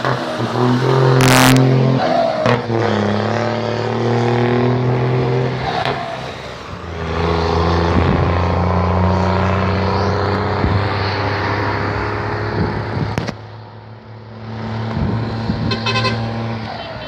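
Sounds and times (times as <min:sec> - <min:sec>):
truck droning: 0:00.0 - 0:17.0.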